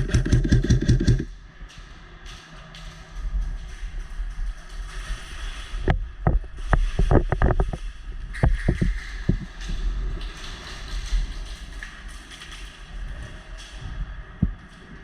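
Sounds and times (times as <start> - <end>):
sharp clacks or knocks: 0.0 - 1.3
low rumbling noise: 0.0 - 15.0.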